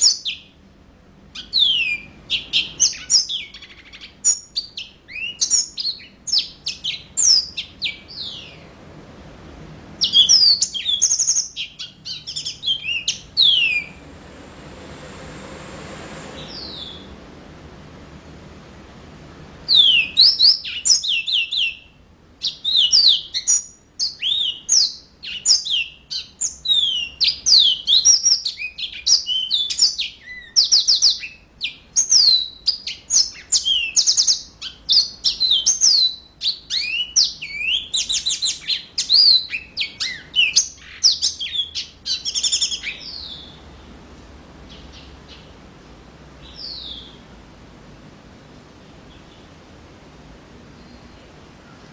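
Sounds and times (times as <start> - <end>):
canary singing trills: 0.0 - 0.6, 1.2 - 8.8, 9.9 - 14.1, 16.3 - 17.2, 19.6 - 44.0, 44.6 - 45.7, 46.4 - 47.3, 50.7 - 51.9.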